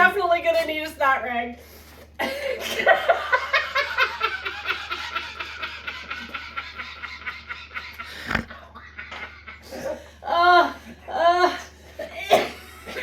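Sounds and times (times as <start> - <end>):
breathy snickering laughter: 2.4 - 10.3.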